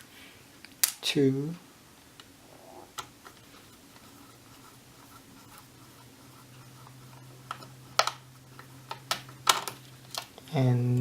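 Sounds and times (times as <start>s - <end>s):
screwdriver ticking and scraping: 3.0s - 10.4s.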